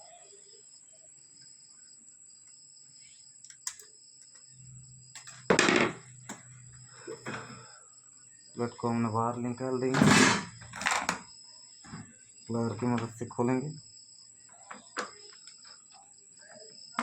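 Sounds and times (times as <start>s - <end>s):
metal tool scraping: 10.0s - 11.2s.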